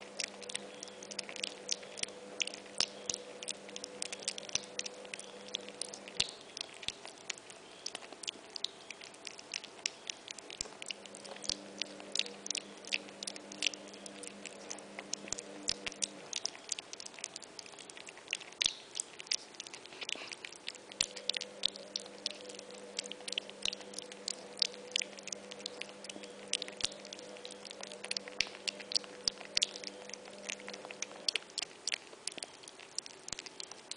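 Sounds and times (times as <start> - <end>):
faint steady hum: 0.0 - 33.9
piglet chewing and crunching: 0.0 - 33.9.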